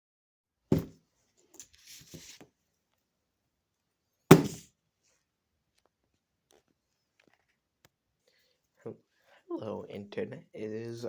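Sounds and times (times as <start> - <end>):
loud thump: 4.3 - 4.6.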